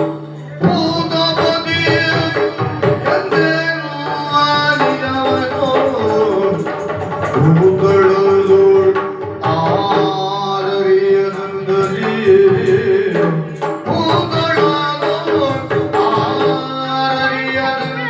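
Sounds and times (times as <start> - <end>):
hand drum strokes: 0.0 - 10.3.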